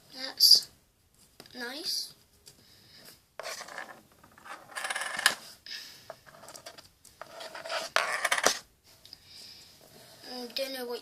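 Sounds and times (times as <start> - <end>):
plastic rubbing and scraping: 6.2 - 8.6.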